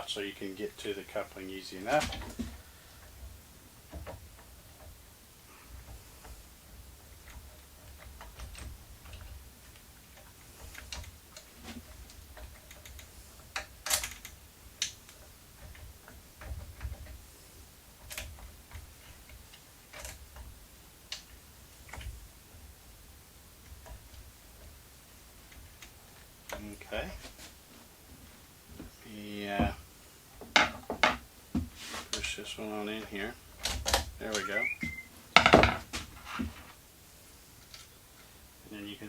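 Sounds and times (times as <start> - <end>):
small parts clicking and tapping: 1.8 - 27.3, 33.0 - 35.8, 37.6 - 38.3.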